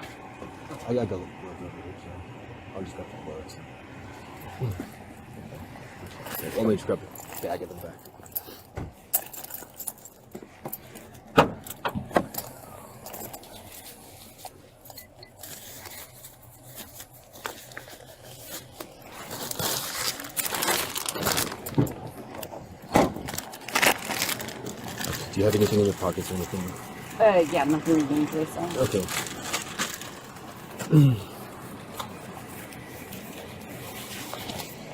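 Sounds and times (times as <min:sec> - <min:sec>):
gear clicking and jangling: 0:06.3 - 0:13.8
fabric rustling: 0:13.0 - 0:34.9.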